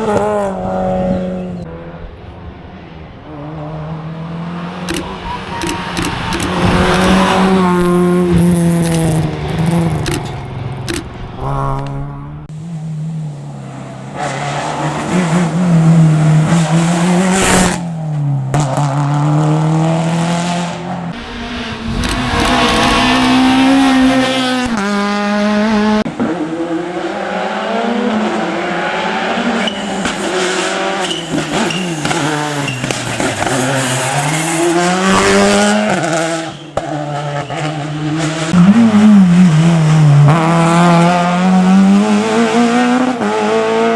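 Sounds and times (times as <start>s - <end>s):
rally car engines revving: 0.0s - 43.9s
tyre squeal: 4.9s - 7.3s, 29.5s - 37.7s.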